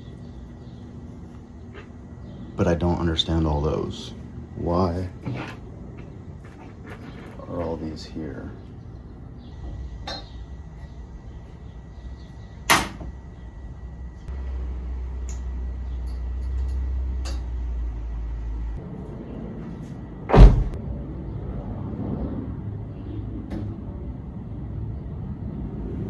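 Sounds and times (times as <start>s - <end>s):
low steady hum: 0.0s - 26.0s
sharp knocks: 20.3s - 20.8s.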